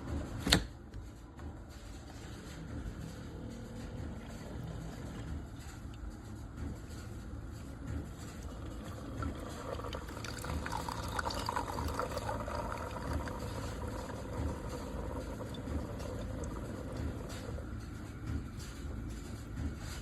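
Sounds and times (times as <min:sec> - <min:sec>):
coffee pouring into a cup: 0:08.4 - 0:17.6.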